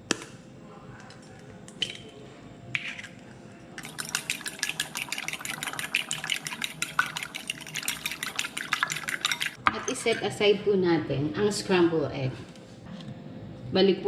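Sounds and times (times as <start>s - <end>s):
utensil beating eggs in a bowl: 3.8s - 9.6s.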